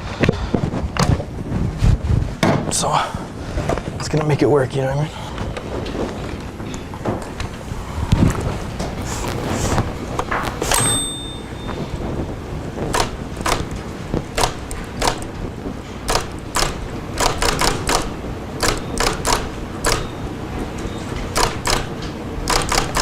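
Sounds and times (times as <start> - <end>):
typewriter bell ring: 10.7 - 11.9
typewriter keys striking: 16.1 - 20.1, 21.3 - 21.9, 22.5 - 23.0.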